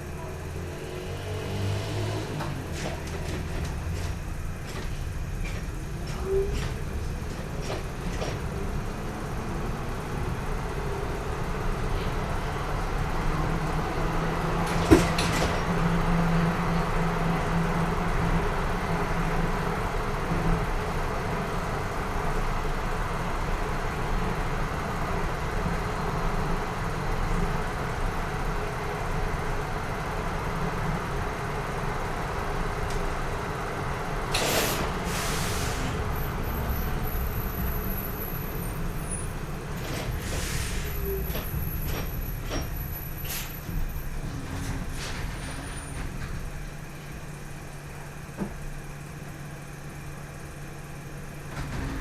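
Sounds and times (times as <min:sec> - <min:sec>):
engine humming: 0:00.0 - 0:52.0
rumble of vehicles: 0:00.0 - 0:52.0
short hisses: 0:34.4 - 0:36.0, 0:40.2 - 0:41.0.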